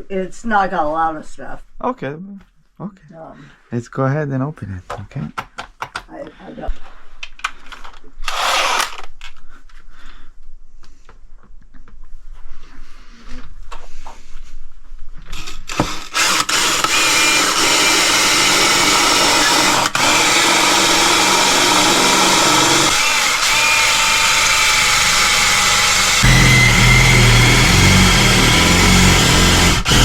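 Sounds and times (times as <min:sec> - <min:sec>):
power drill drilling into metal: 0:08.3 - 0:09.0, 0:15.7 - 0:30.0.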